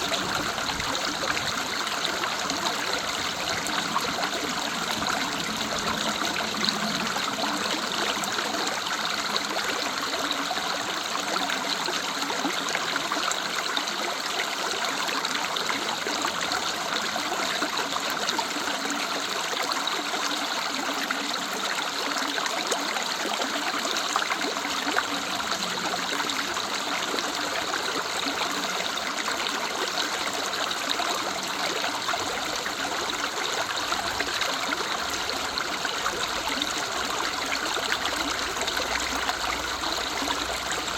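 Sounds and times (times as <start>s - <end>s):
river water rushing: 0.0s - 19.4s.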